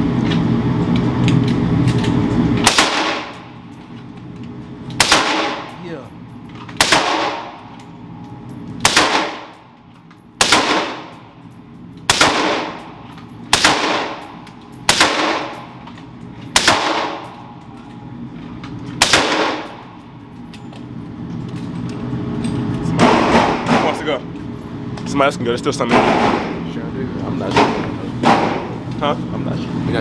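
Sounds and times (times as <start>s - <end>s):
gunshots with ringing echo: 2.7s - 3.5s, 5.0s - 5.8s, 6.8s - 7.7s, 8.8s - 9.6s, 10.4s - 11.2s, 12.1s - 15.8s, 16.5s - 17.5s, 19.0s - 20.0s.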